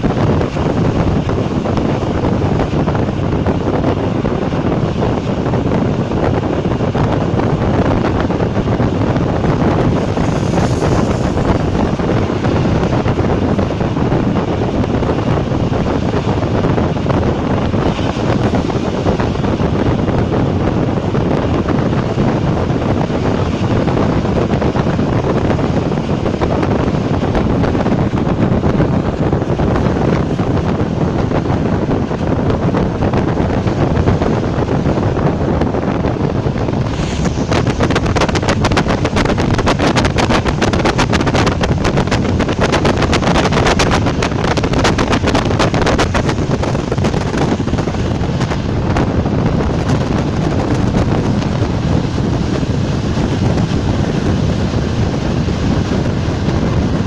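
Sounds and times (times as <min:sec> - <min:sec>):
rushing air: 0:00.0 - 0:57.0
train wheels on rail: 0:00.0 - 0:57.0.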